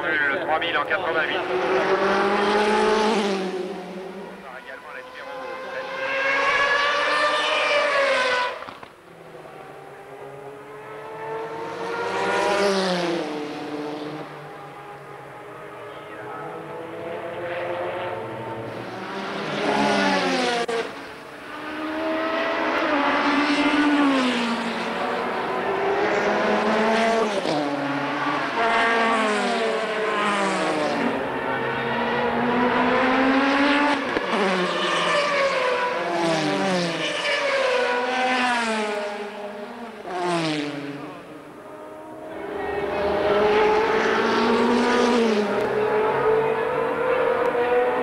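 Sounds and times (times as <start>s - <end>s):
race cars passing: 0.0s - 48.0s.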